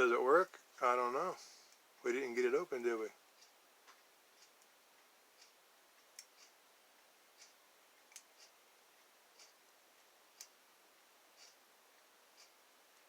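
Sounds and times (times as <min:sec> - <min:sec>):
faint regular ticking: 0:00.0 - 0:13.0.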